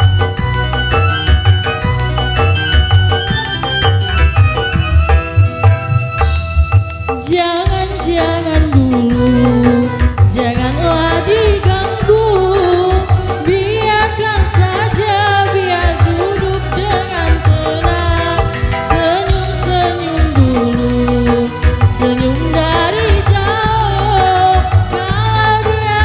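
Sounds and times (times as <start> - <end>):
drum and bass rhythm: 0.0 - 26.0
ornamented lead melody: 0.0 - 26.0.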